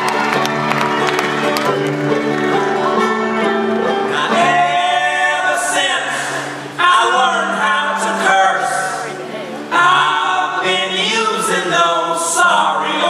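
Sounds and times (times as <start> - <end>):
band instruments playing: 0.0 - 13.0
voices singing in harmony: 2.8 - 13.0.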